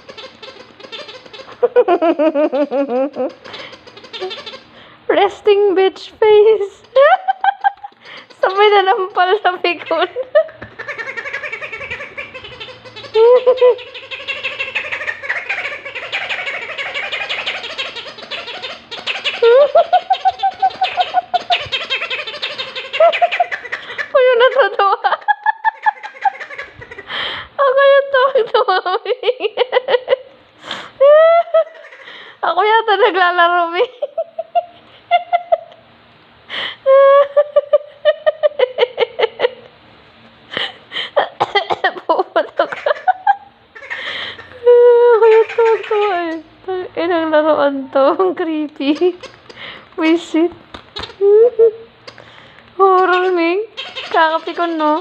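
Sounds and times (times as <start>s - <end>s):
toy making meow-like squeals: 0.0s - 1.6s, 3.4s - 4.7s, 53.2s - 55.0s
toy squeaking and hooting: 0.0s - 4.8s, 6.7s - 24.8s, 43.8s - 46.4s, 52.9s - 55.0s.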